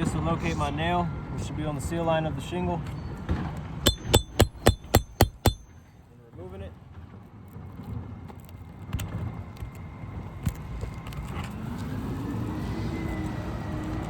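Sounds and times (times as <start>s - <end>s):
hammer metal clicks: 3.9s - 5.6s.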